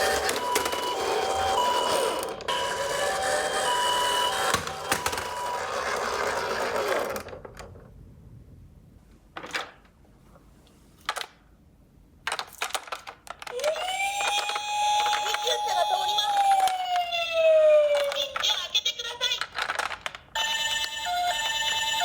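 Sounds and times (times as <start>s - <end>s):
toy electronic siren: 0.0s - 6.6s, 13.5s - 18.4s, 20.4s - 22.0s
toy car wheels rattling whirr: 0.0s - 7.5s, 12.3s - 16.8s
small plastic knocks: 19.4s - 20.3s.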